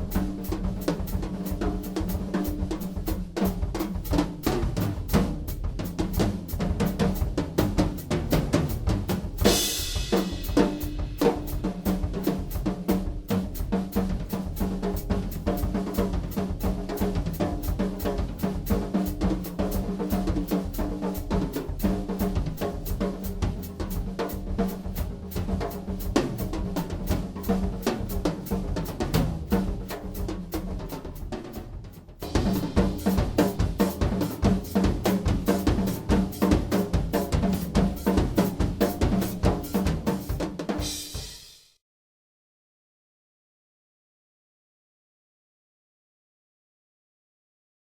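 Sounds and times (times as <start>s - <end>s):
drum kit groove: 0.0s - 41.8s
cymbal crash: 9.5s - 11.6s.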